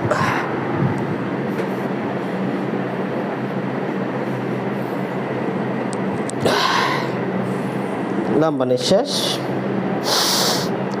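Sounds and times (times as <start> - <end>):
mechanical room hum: 0.0 - 11.0.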